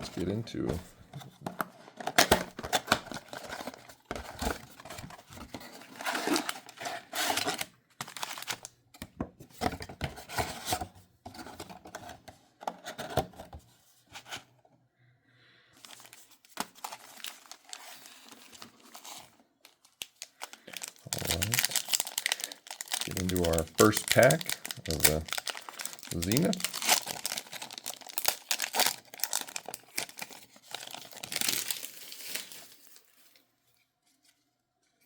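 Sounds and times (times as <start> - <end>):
card packaging tearing and crinkling: 0.0 - 8.7, 15.8 - 33.4.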